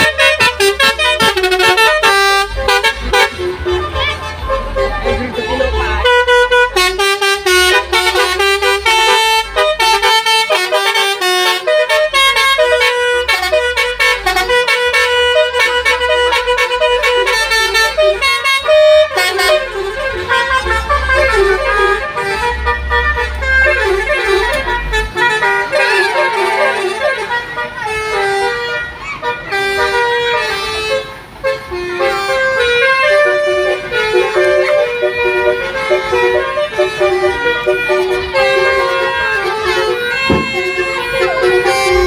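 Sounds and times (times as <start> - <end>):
multi-tone musical vehicle horn: 0.0 - 42.0.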